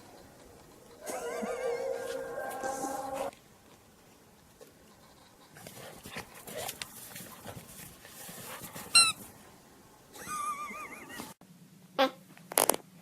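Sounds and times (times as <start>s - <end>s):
rustling: 0.0s - 9.6s
dog whining: 1.0s - 3.3s
dog squeaking: 8.9s - 9.2s.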